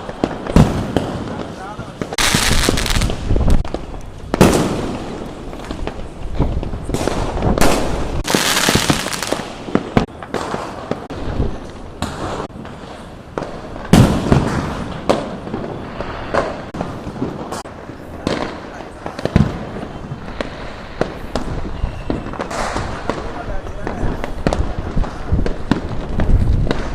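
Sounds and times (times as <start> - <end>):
fireworks banging: 0.0 - 26.9
fireworks crackling: 0.0 - 26.9.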